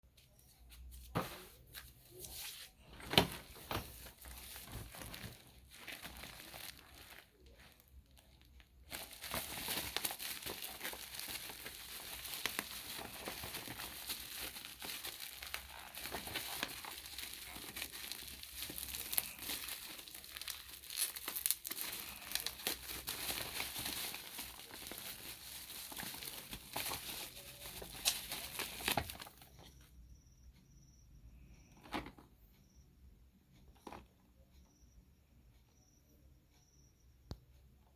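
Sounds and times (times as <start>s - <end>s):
plastic packaging crinkling and tearing: 3.1s - 29.5s.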